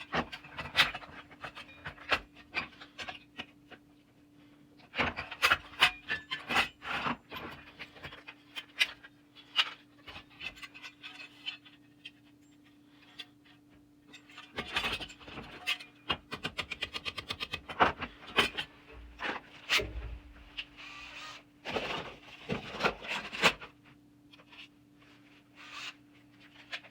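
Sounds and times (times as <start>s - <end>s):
faint steady hum: 0.0s - 26.9s
scraping and rubbing on metal toy: 5.3s - 16.0s, 18.3s - 23.7s, 24.3s - 26.9s.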